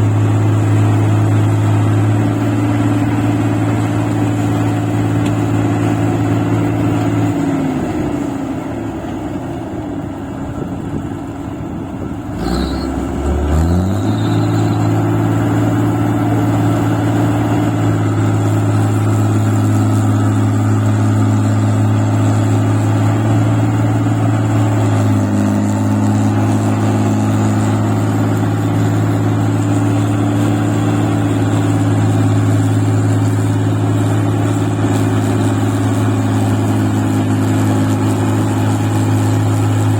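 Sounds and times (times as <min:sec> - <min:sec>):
machine engine running: 0:11.4 - 0:39.9.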